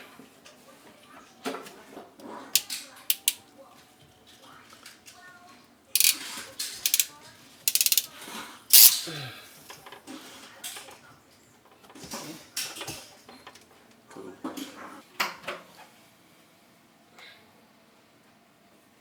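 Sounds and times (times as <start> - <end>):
ratchet-like clicks: 2.6 - 3.4, 6.0 - 6.2, 6.8 - 7.1, 7.7 - 8.1, 8.7 - 9.0.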